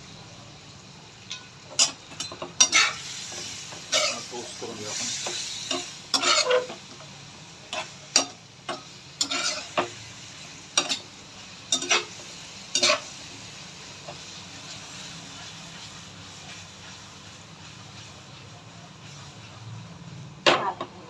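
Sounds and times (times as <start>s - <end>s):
chicken sizzling: 0.0s - 21.0s
spatula scraping a pan: 1.7s - 6.9s, 7.7s - 10.0s, 11.7s - 13.2s.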